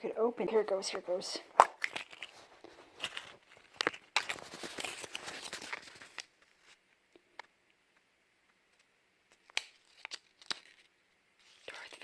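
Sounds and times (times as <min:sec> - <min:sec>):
packaging tearing and rustling: 0:01.6 - 0:06.8, 0:09.3 - 0:12.0.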